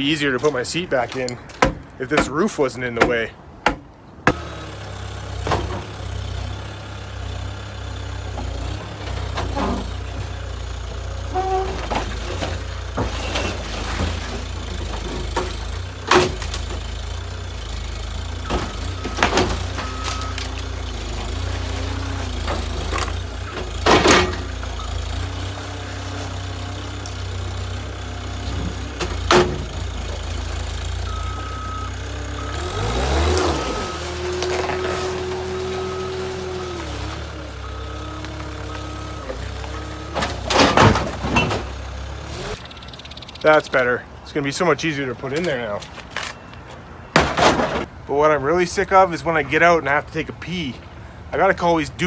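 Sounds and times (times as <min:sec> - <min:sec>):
metal bangs and crunches: 0:00.0 - 0:42.6, 0:45.2 - 0:48.0
skid steer engine running: 0:04.3 - 0:43.4.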